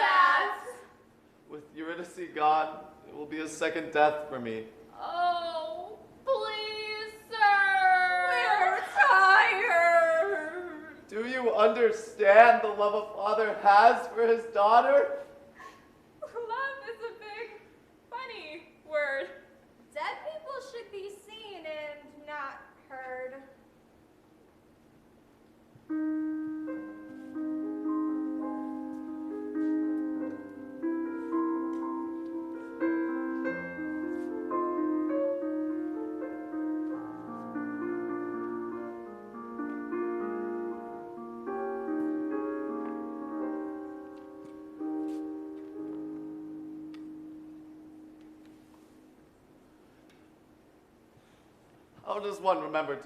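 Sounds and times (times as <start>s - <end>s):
slow gentle piano music: 25.7s - 50.9s.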